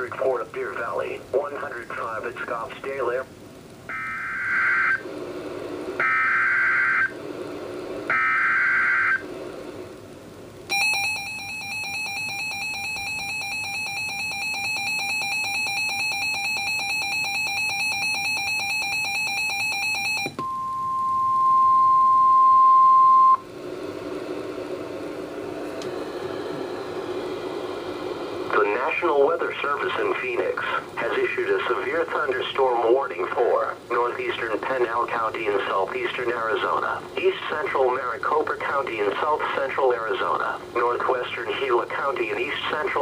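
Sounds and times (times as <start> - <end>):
harsh buzzing alert tone: 3.9 - 5.0, 8.1 - 9.2
steady warning alarm tone: 3.9 - 9.3, 10.7 - 23.5.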